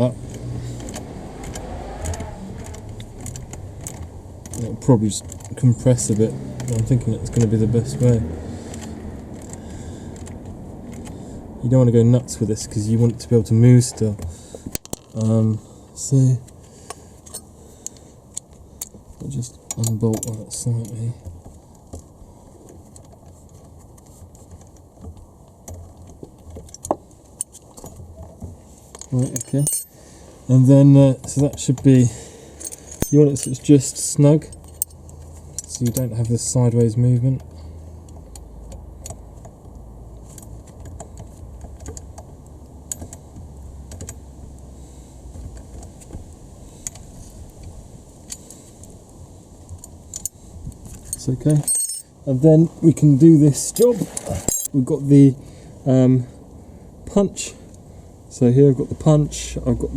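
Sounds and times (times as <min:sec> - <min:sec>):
metal clicks of hand tools: 0:28.9 - 0:30.0, 0:32.6 - 0:33.6, 0:51.0 - 0:52.0, 0:53.7 - 0:54.8.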